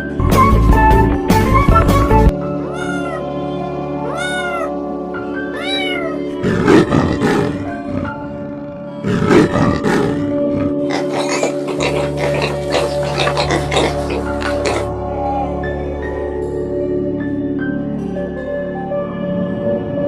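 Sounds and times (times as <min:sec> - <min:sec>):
background music with held chord: 0:00.0 - 0:20.0
cat meowing: 0:02.7 - 0:03.3, 0:04.0 - 0:04.8, 0:05.5 - 0:06.3
cat growling: 0:04.1 - 0:04.8, 0:05.6 - 0:15.6.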